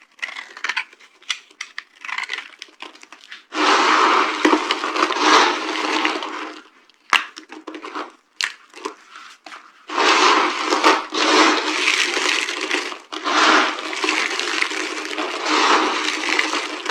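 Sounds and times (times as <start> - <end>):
soap cracking and snapping: 0.0 - 3.5, 6.6 - 9.6
dry soap crunching: 0.0 - 16.9.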